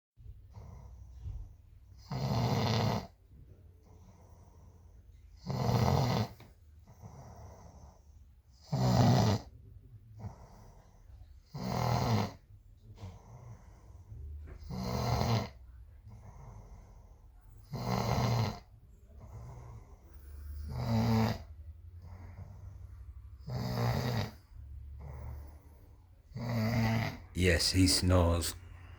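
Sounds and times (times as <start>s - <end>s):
loud snoring: 2.0s - 3.2s, 5.4s - 6.4s, 8.6s - 9.5s, 11.5s - 12.4s, 14.6s - 15.6s, 17.7s - 18.7s, 20.6s - 22.3s, 23.4s - 24.4s, 26.3s - 27.3s
quiet breathing: 3.8s - 5.3s, 12.9s - 14.6s, 18.9s - 20.7s, 21.8s - 23.4s.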